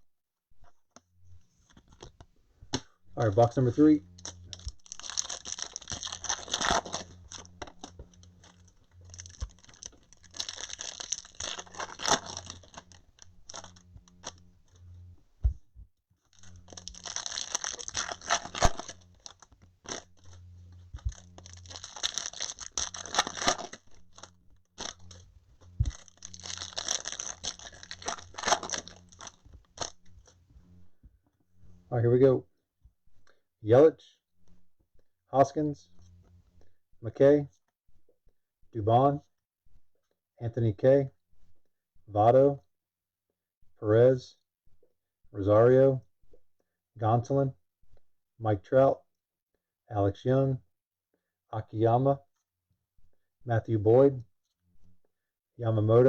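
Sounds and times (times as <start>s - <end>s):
foil wrappers tearing and crinkling: 4.2s - 14.8s, 16.4s - 30.3s.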